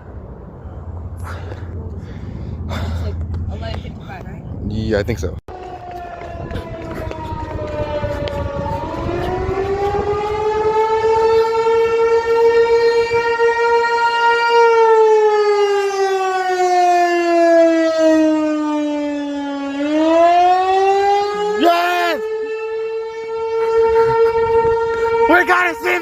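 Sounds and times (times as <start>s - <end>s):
warning siren winding: 7.1s - 25.8s.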